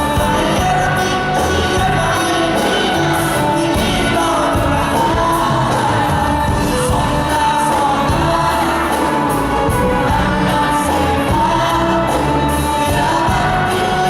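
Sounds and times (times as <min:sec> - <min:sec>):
live band music: 0:00.0 - 0:14.0
person singing long notes: 0:00.0 - 0:14.0.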